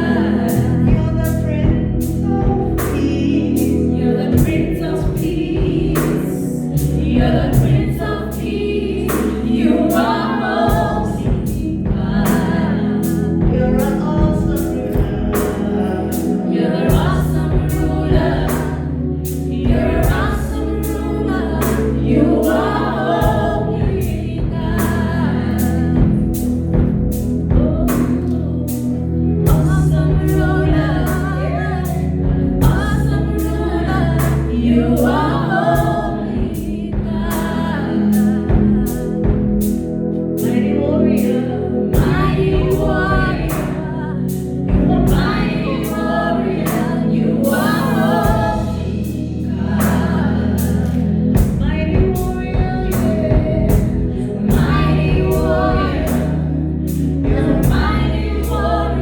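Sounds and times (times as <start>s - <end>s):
band playing: 0.0s - 59.0s
group singing gospel: 0.0s - 59.0s
drum beat: 10.7s - 15.8s, 49.8s - 56.4s, 57.2s - 58.8s.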